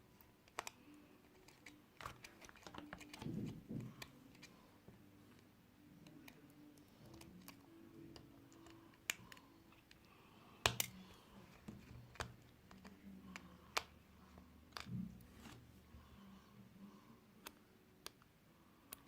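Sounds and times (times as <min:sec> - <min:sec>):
small tools clicking and tapping: 0:10.6 - 0:11.0.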